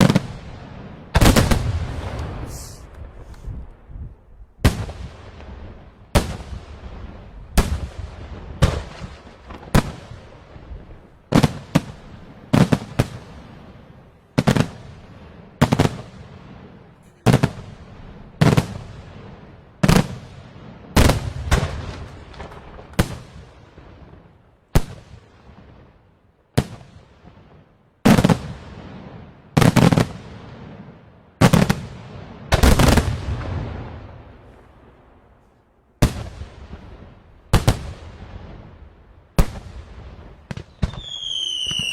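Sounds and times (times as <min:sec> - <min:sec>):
firecrackers banging with echo: 0:04.6 - 0:26.0.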